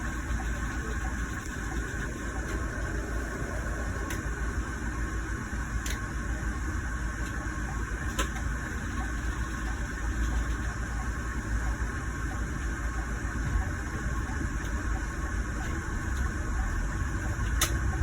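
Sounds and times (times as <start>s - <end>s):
diesel engine rumble: 0.0s - 9.8s
road rumble: 1.7s - 5.9s.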